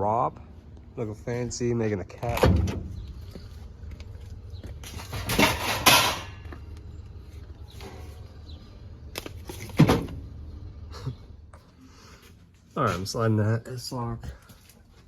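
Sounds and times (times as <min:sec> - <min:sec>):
steady low hum: 0:00.0 - 0:15.0
thin sheet metal clanking: 0:05.0 - 0:06.4.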